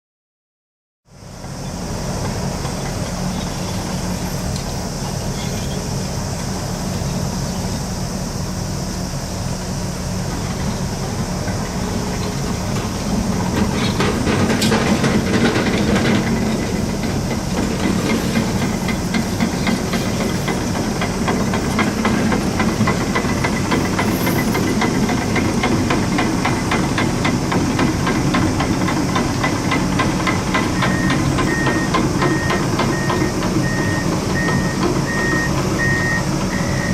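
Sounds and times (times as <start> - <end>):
diesel engine running: 1.1 - 36.9
reversing alarm beeping: 30.7 - 36.9.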